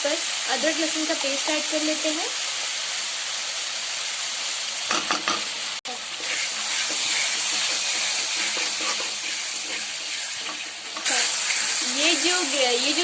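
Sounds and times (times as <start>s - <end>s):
gravy sizzling in hot oil: 0.0s - 13.0s
spoon knocking on pot: 4.9s - 5.5s.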